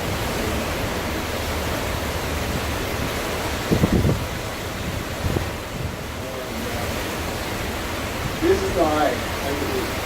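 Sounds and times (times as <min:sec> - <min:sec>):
wind gust buffeting microphone: 0:00.0 - 0:10.0
strong wind rushing: 0:02.4 - 0:06.3.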